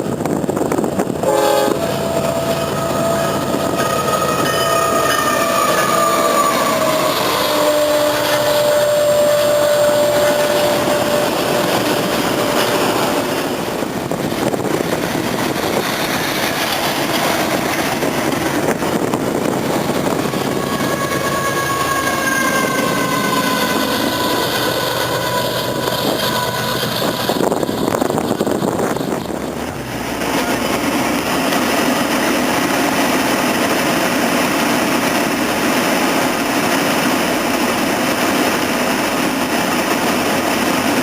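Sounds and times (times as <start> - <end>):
train wheels rumbling on rails: 0.0 - 41.0
high wheel squeal: 1.3 - 13.2, 20.0 - 29.2.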